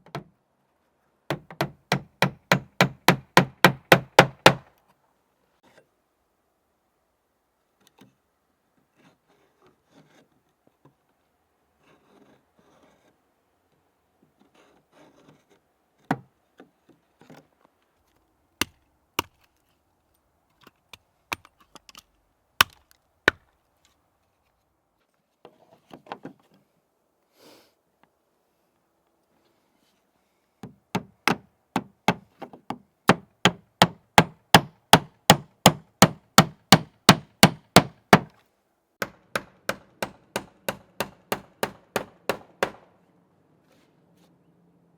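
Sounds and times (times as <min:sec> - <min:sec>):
hand tool knocking wood: 0:01.3 - 0:04.6, 0:30.6 - 0:38.3, 0:39.0 - 0:42.8.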